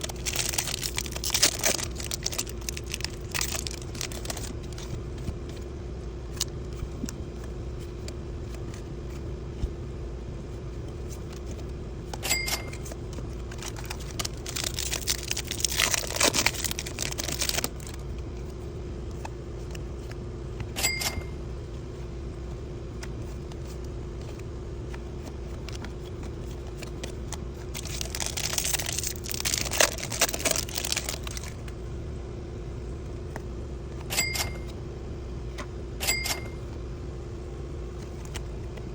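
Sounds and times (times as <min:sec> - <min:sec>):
foil wrapper crinkling: 0:00.0 - 0:05.2, 0:13.0 - 0:18.2, 0:25.6 - 0:31.7
cards rustling: 0:00.0 - 0:09.8, 0:10.4 - 0:31.8, 0:37.9 - 0:38.9
low hum: 0:00.0 - 0:38.9.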